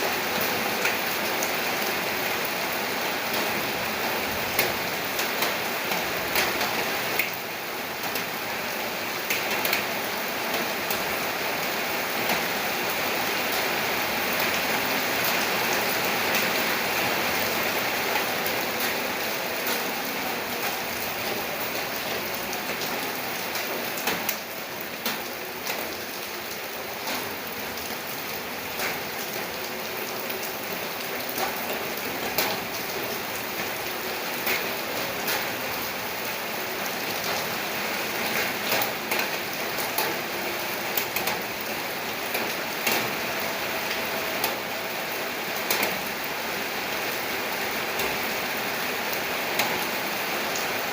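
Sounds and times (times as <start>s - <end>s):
steady rain hiss: 0.0s - 50.9s
raindrops ticking: 20.6s - 37.6s, 38.2s - 43.2s, 43.8s - 44.7s, 45.6s - 46.3s.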